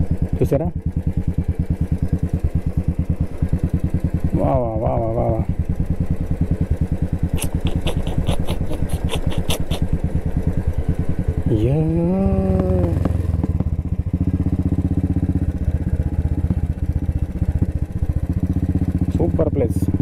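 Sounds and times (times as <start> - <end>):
motorcycle engine running: 0.0 - 20.0
quick series of clicks: 7.4 - 9.8.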